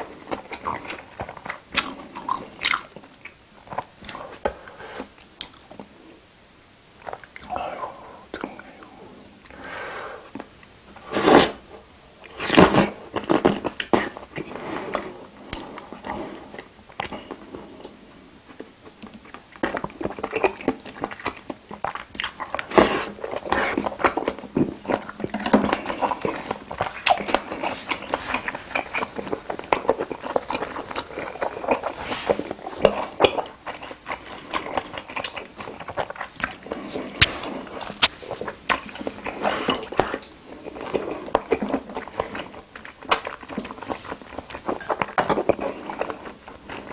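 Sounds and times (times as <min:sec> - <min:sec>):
chewing and biting food: 0:00.0 - 0:04.5, 0:18.5 - 0:46.9.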